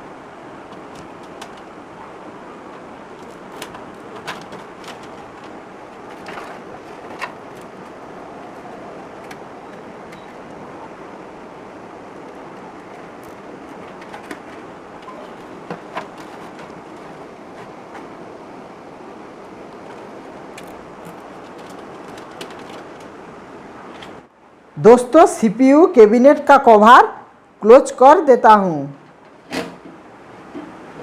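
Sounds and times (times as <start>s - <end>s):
steady background hiss: 0.0s - 31.0s
cables clicking and tapping: 0.7s - 1.8s, 19.7s - 23.2s.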